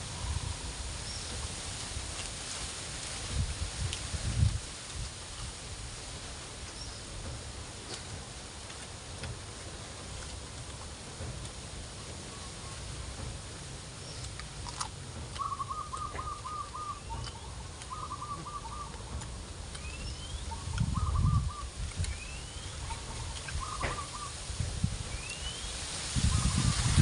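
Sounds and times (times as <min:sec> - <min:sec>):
wind rumble on microphone: 0:00.0 - 0:12.3, 0:15.2 - 0:27.0
bird trill and whistle: 0:15.4 - 0:18.9, 0:19.8 - 0:24.4, 0:25.1 - 0:25.7.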